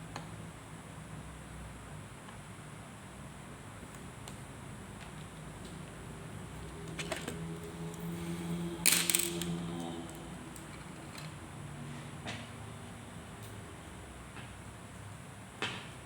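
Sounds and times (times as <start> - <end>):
small hard parts clicking: 8.7 - 11.4.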